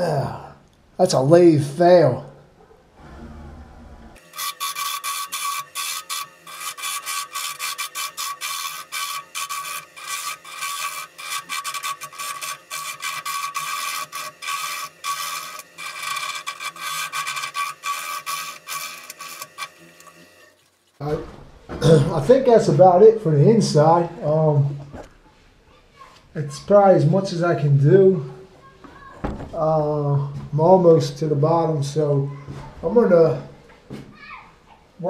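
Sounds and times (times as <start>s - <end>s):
lathe whining: 3.0s - 20.7s
turning tool scraping wood: 3.0s - 21.0s.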